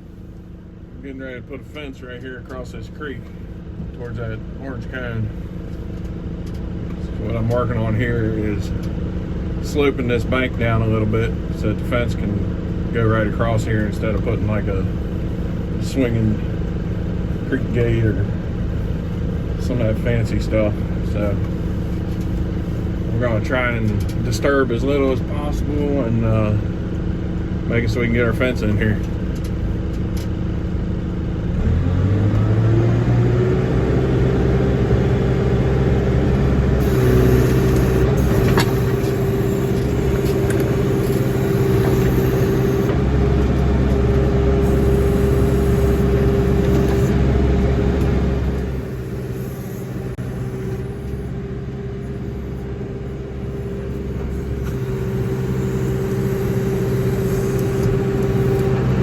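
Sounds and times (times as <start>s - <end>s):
backhoe diesel engine revving: 31.4s - 59.0s.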